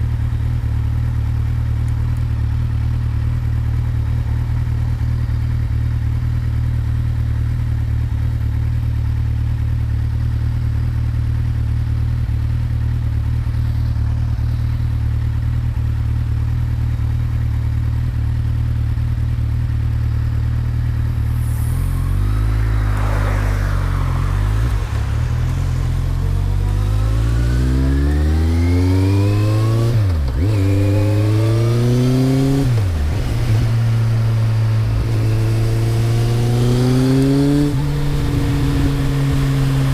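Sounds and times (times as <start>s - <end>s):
motorcycle engine idling and revving: 0.0s - 39.9s.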